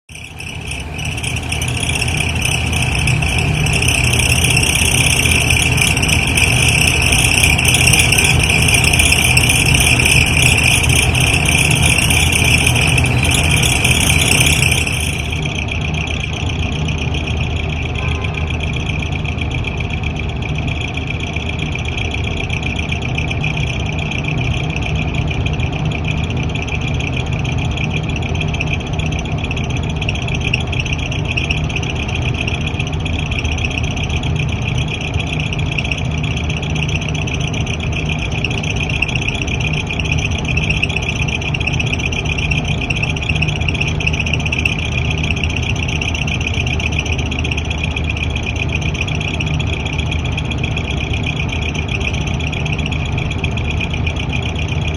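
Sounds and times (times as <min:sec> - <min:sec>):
harsh high-pitched rattling: 0:00.0 - 0:54.9
exhaust fan humming: 0:00.1 - 0:54.9.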